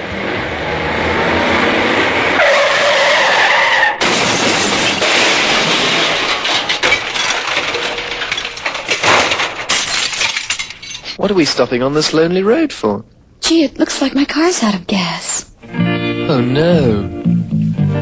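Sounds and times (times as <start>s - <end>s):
tyre skid squealing: 2.3s - 4.0s.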